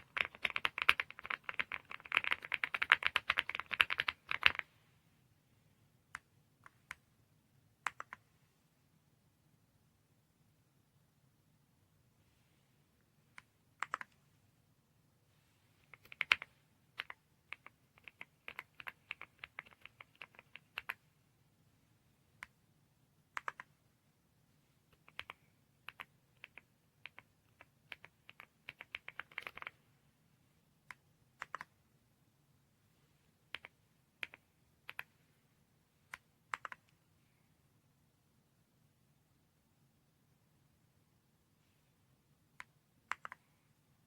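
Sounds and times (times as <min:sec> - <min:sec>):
mechanical keyboard typing: 0:00.0 - 0:04.6, 0:13.8 - 0:14.1, 0:16.0 - 0:21.0, 0:23.4 - 0:23.7, 0:25.0 - 0:29.7, 0:36.6 - 0:36.9.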